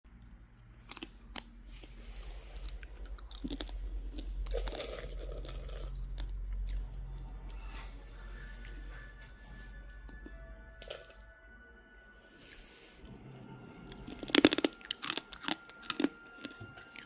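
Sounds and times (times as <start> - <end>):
chewing crunchy chips: 0.1 - 7.6, 13.9 - 17.0.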